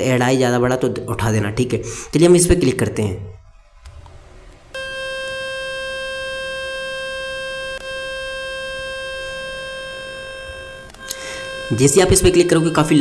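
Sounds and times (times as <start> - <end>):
loud steady electronic tone: 4.7 - 13.0.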